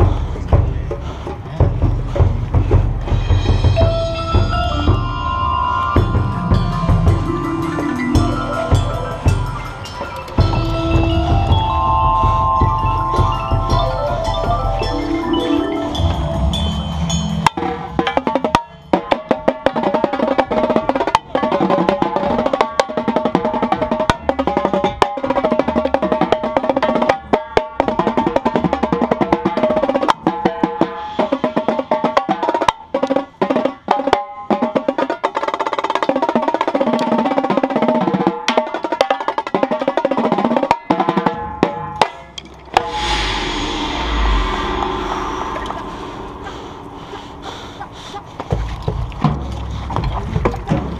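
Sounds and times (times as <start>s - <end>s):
tenor drums playing fast: 0.0s - 5.3s, 6.0s - 41.9s
held mallet tones: 3.2s - 19.2s, 42.7s - 49.6s.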